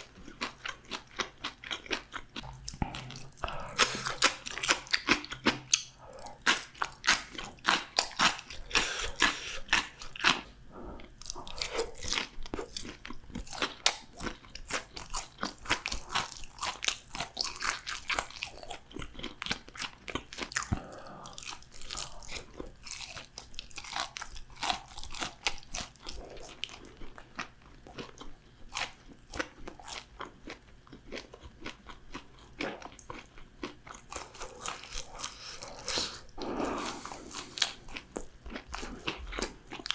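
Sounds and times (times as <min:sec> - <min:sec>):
crunching and chewing fried food: 0:00.0 - 0:39.9.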